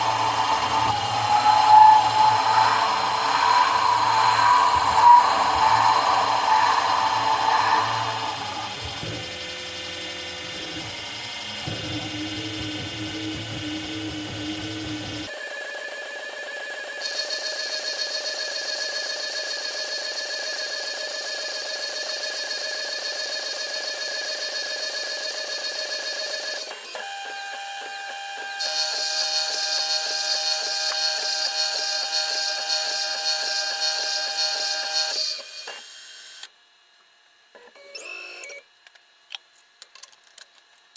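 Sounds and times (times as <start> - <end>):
high-pitched whine: 0.0 - 19.3
milling machine motor whine: 0.0 - 36.5.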